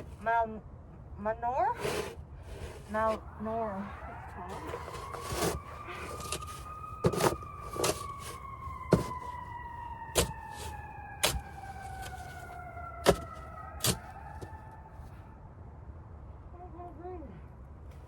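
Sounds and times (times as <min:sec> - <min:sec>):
siren wailing: 0:02.7 - 0:15.5.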